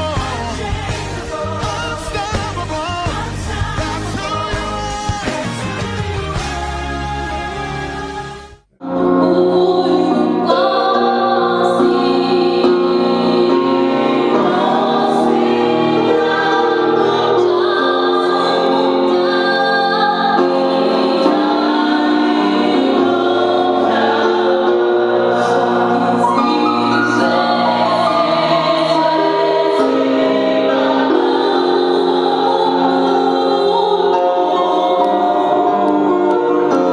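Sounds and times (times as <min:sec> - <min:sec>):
choir singing gospel: 0:00.0 - 0:36.9.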